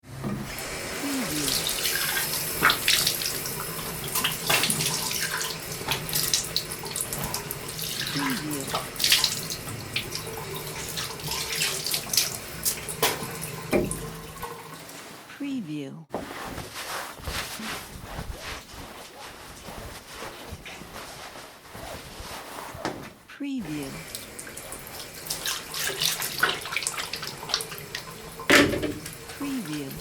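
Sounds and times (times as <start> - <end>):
tap water running into sink: 0.2 - 14.9, 24.0 - 29.4.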